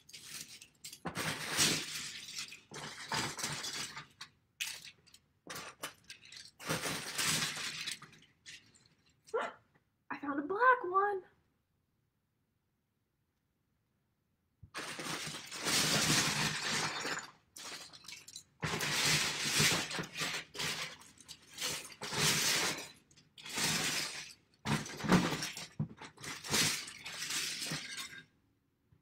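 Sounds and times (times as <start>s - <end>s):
plastic bricks clattering: 0.0s - 9.2s, 14.8s - 28.4s.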